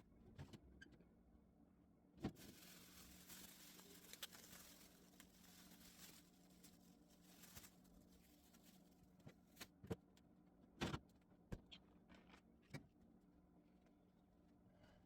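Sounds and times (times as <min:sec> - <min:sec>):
faint steady hum: 0:00.0 - 0:15.0.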